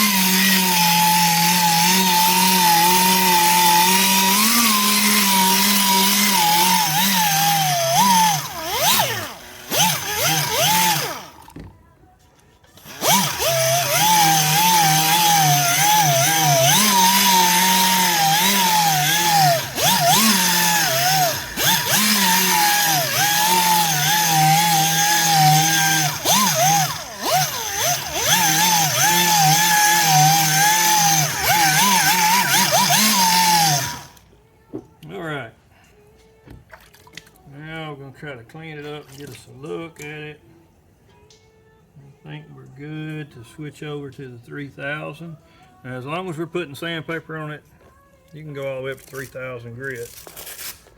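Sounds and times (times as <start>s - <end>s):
power sander motor: 0.0s - 11.6s, 12.8s - 34.2s.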